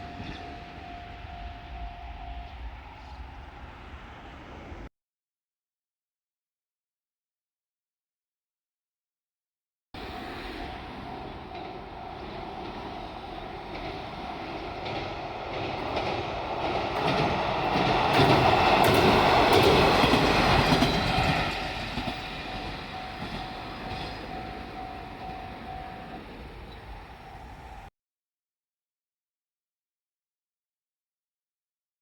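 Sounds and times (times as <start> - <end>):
crossing warning tone: 0.0 - 4.9, 10.0 - 27.9
train passing: 0.0 - 4.9, 10.0 - 27.9
wheels clicking over rail joints: 10.0 - 27.9.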